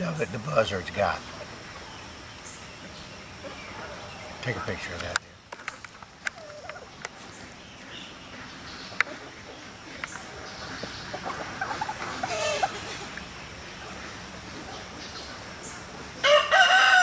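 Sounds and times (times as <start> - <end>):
rooster crowing: 16.2 - 17.0.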